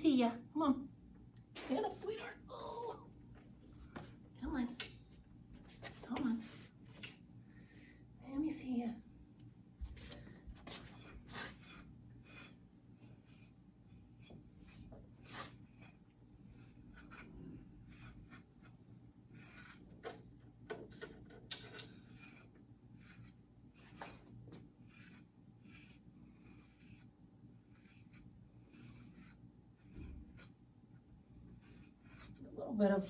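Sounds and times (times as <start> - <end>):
brush strokes through dog fur: 22.0 - 32.5.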